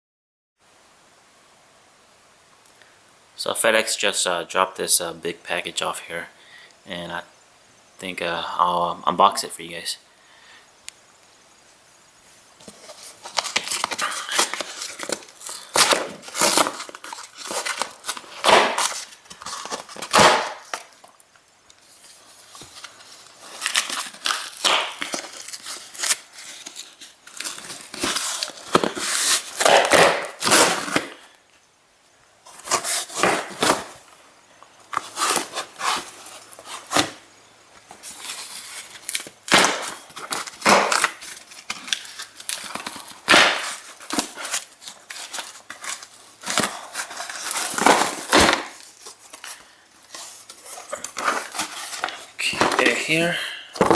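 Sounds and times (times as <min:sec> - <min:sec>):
tape and cardboard tearing: 0:12.6 - 0:21.1, 0:21.8 - 0:31.3, 0:32.5 - 0:34.0, 0:34.9 - 0:37.2, 0:37.9 - 0:53.0.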